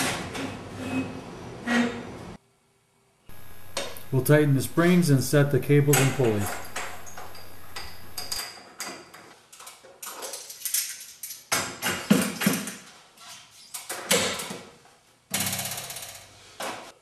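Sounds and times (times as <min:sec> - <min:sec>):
metallic tool clanks: 0:05.9 - 0:08.5.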